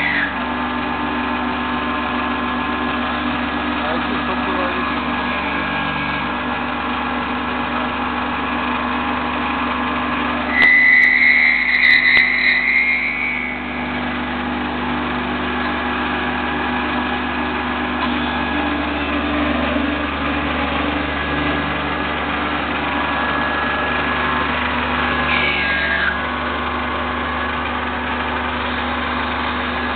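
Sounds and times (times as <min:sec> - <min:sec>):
high-pitched squeal: 0:00.0 - 0:00.4, 0:10.3 - 0:14.7, 0:18.0 - 0:27.4
lathe humming: 0:00.0 - 0:29.9
short falling whine: 0:08.7 - 0:27.4.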